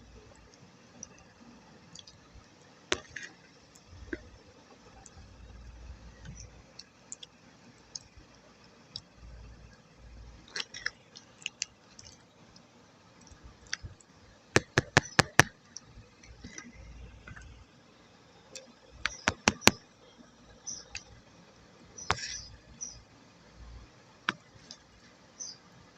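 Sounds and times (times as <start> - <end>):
wet clay clicks: 2.9 - 4.4, 10.4 - 17.6, 18.6 - 19.8, 22.0 - 22.5
wet clay squishing: 2.9 - 4.4, 10.3 - 12.6.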